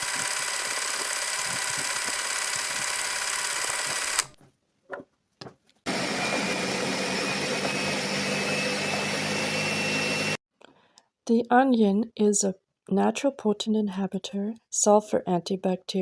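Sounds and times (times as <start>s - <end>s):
electric blender motor running: 0.0s - 4.4s, 5.9s - 10.4s.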